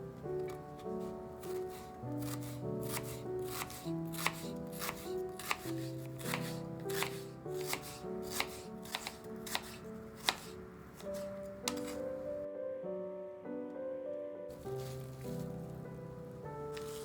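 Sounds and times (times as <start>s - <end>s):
background music: 0.0s - 17.0s
knife chopping on cutting board: 1.0s - 12.2s, 16.7s - 17.0s.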